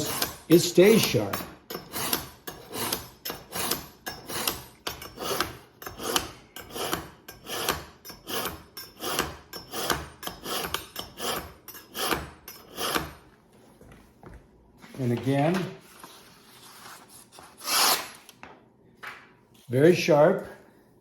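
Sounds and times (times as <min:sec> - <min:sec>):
knife scraping through sharpener: 0:00.0 - 0:13.2, 0:17.6 - 0:18.2.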